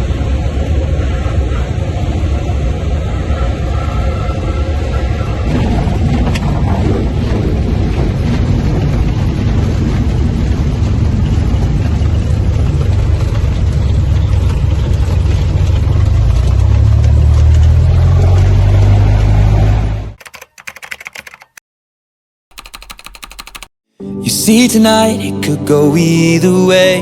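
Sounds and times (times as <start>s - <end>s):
vehicle rumbling in motion: 0.0s - 20.2s.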